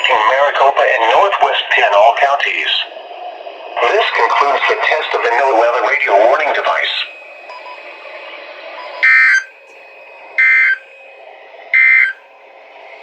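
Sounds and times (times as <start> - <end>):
faint radio hiss: 0.0 - 8.8
warbling digital data tones: 0.0 - 13.0.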